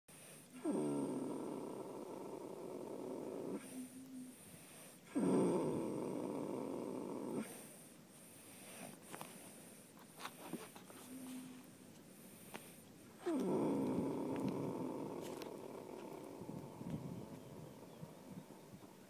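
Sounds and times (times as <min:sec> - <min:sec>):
horse snoring: 0:00.6 - 0:04.0, 0:05.1 - 0:07.7, 0:13.2 - 0:18.6.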